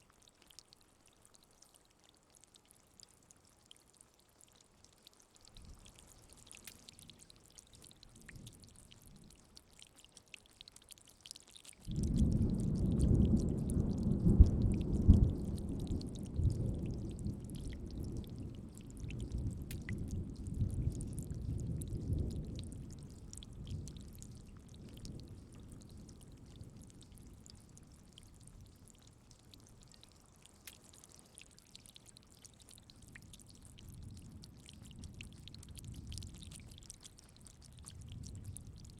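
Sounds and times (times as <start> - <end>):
thunder rumbling: 11.9 - 23.2.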